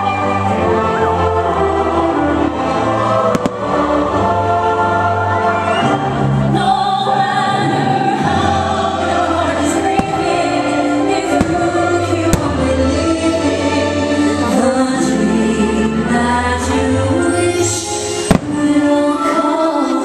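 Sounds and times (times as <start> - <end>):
choir and orchestral music: 0.0 - 20.0
firework bangs: 3.3 - 4.1, 9.9 - 13.0, 18.2 - 19.0.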